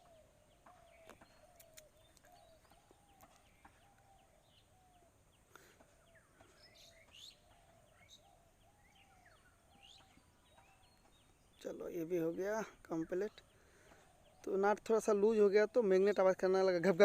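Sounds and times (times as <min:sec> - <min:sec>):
bird chirping: 0:00.0 - 0:17.0
faint clicks: 0:01.0 - 0:04.1.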